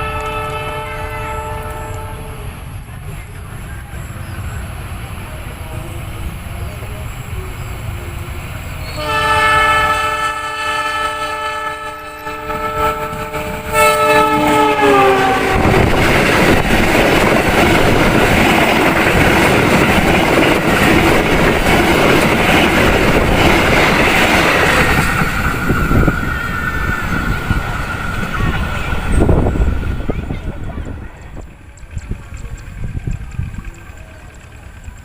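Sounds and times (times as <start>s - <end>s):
train horn blast: 0.0s - 2.5s, 8.8s - 16.2s
train rushing past: 0.0s - 35.0s
wheel clatter on rails: 15.6s - 35.0s.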